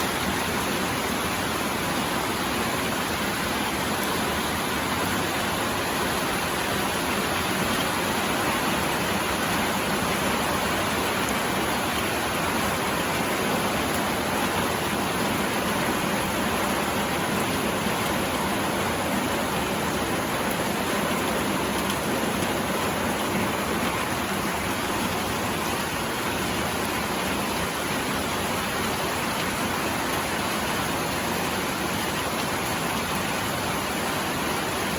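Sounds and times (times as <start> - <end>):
rain on a roof: 0.0 - 34.9.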